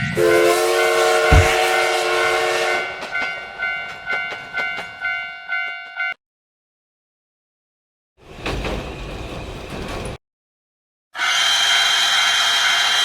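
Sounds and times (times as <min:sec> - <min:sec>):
multi-note train horn: 0:00.0 - 0:03.0
rushing train noise: 0:00.0 - 0:05.2, 0:11.2 - 0:13.0
thump: 0:01.3 - 0:01.6
railway crossing bell ringing: 0:02.8 - 0:06.2.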